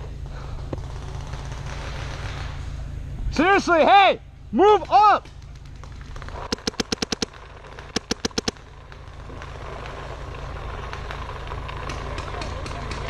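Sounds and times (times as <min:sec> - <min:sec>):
paintball marker firing bursts: 0:00.7 - 0:02.7, 0:04.7 - 0:09.9.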